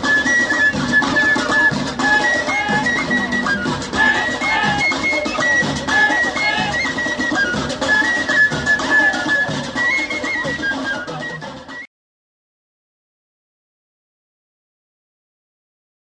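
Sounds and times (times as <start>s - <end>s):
folk flute melody: 0.0s - 11.9s.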